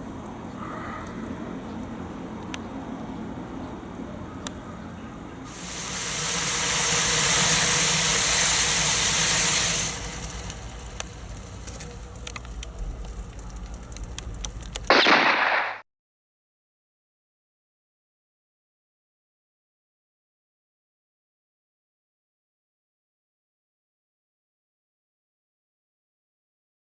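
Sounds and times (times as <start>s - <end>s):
battery venting gas hiss: 5.5s - 14.2s
crackles and pops: 10.4s - 15.8s
short loud burst: 14.9s - 15.8s.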